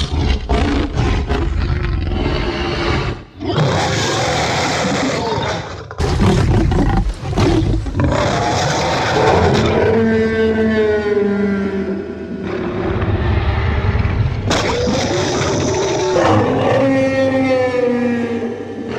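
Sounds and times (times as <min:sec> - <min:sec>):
dinosaur roars: 0:00.0 - 0:18.9.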